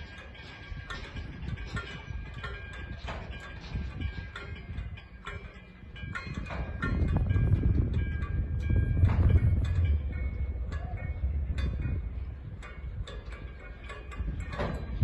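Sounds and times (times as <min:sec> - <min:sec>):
steel wheels squealing on rails: 0:00.0 - 0:15.0
wheels clacking on track: 0:00.0 - 0:15.0
low rumble: 0:06.7 - 0:13.4.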